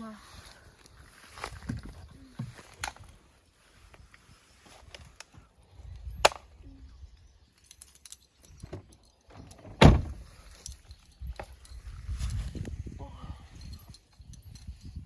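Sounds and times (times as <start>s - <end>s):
heavy low thud: 9.8s - 10.2s.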